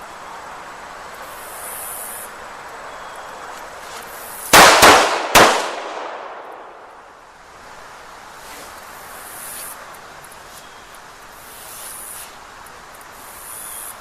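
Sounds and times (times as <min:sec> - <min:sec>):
insects buzzing: 0:00.0 - 0:04.7, 0:06.4 - 0:14.0
pistol shots with echo: 0:04.5 - 0:06.9.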